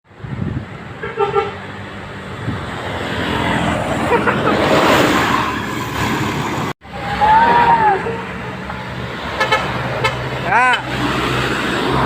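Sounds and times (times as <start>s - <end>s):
road traffic noise: 0.0s - 12.0s
bus horn toot: 1.0s - 1.7s, 9.4s - 10.9s.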